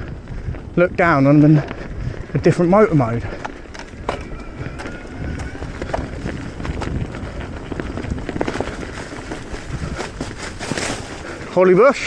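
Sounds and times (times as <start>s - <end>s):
wind noise on microphone: 0.0s - 3.4s
bike clicks and rattles: 2.0s - 12.0s
tyres rumbling over dirt: 2.2s - 12.0s.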